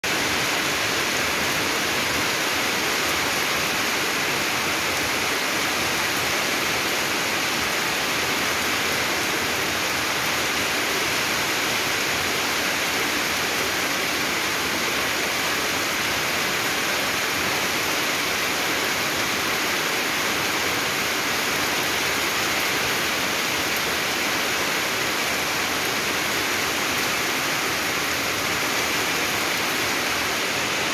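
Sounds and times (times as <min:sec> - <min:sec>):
heavy rain hiss: 0:00.1 - 0:30.9.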